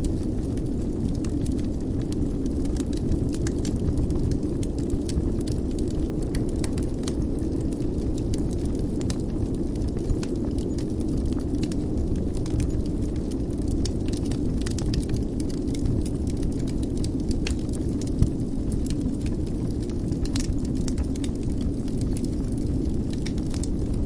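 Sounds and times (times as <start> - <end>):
wood fire crackling: 0.0 - 24.0.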